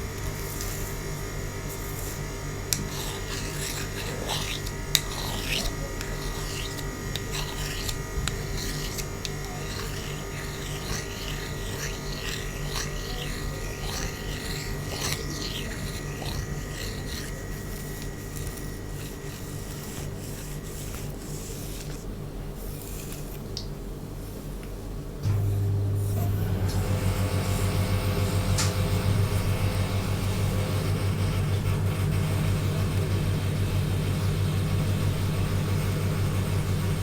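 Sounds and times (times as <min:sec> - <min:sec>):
comb rasping through hair: 0:00.0 - 0:23.7.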